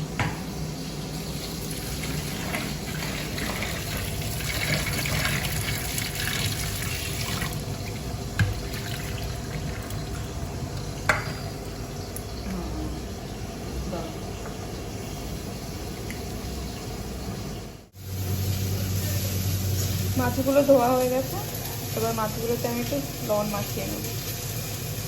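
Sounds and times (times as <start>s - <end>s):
running water splashing: 1.2s - 12.5s.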